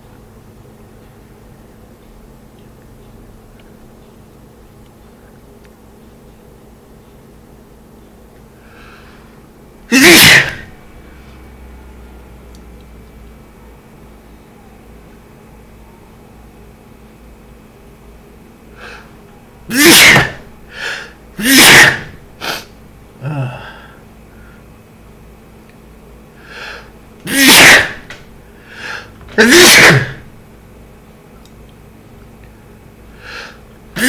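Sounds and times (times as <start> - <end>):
man sneezing: 9.9 - 10.8, 19.7 - 23.9, 27.2 - 28.2, 28.8 - 30.3.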